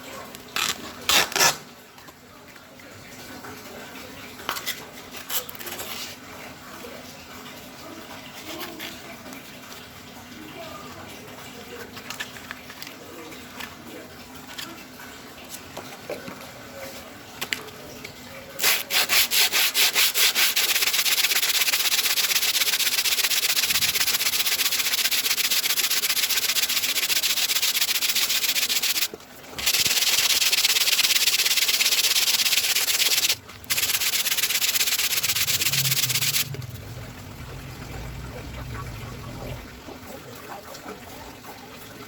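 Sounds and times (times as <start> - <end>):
sandpaper rasping on wood: 18.6 - 36.4.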